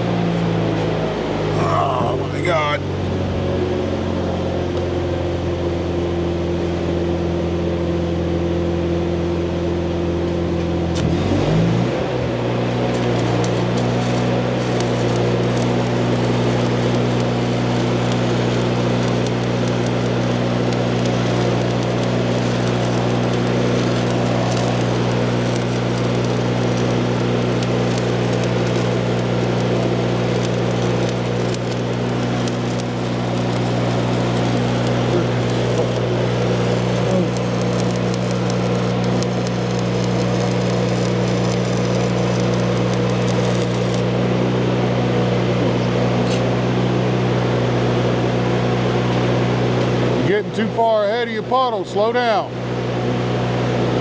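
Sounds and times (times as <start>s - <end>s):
welding machine engine drone: 3.1s - 8.3s, 10.9s - 45.5s
welding arc crackling: 12.7s - 44.2s.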